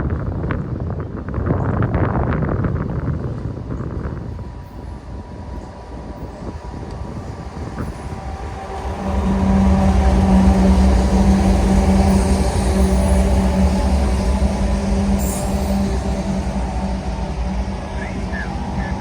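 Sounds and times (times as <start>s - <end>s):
diesel locomotive engines rumbling: 0.0s - 19.0s
rail noise: 0.0s - 19.0s.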